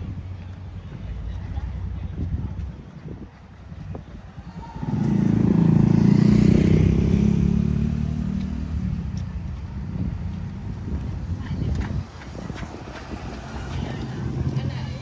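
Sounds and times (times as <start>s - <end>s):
motor vehicle passing: 3.5s - 15.0s.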